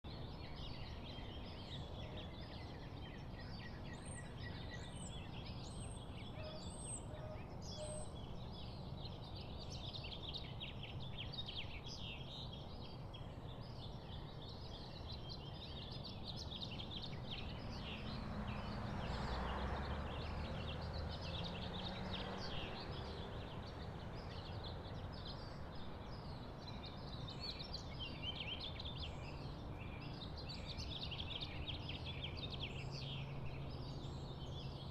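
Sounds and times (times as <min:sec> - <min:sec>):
birds chirping in chorus: 0:00.1 - 0:34.9.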